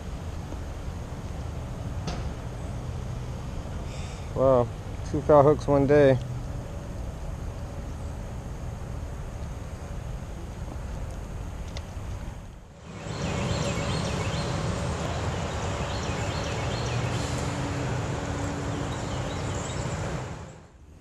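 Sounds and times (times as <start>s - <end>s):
outdoor rushing noise: 0.0s - 21.0s
bird chirping: 12.8s - 20.6s.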